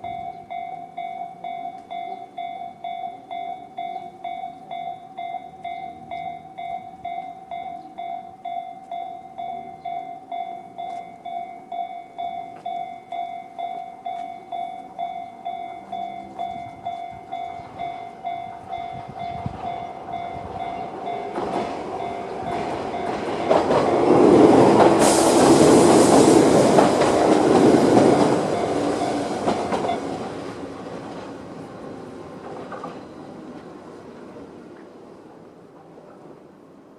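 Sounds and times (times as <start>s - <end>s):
level crossing bell ringing: 0.0s - 24.6s, 28.0s - 30.2s
electric train passing: 0.0s - 36.9s.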